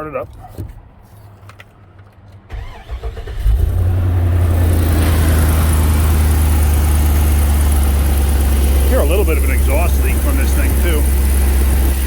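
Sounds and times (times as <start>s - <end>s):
truck engine cranking and running: 2.5s - 12.0s
exhaust hiss: 4.9s - 12.0s.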